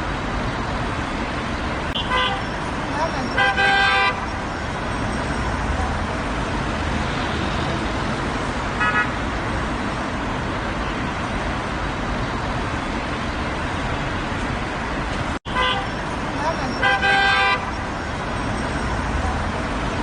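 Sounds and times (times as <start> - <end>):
road traffic rumble: 0.0 - 20.0
car horn toot: 2.0 - 2.5, 3.2 - 4.3, 8.8 - 9.2, 15.5 - 16.0, 16.7 - 17.8.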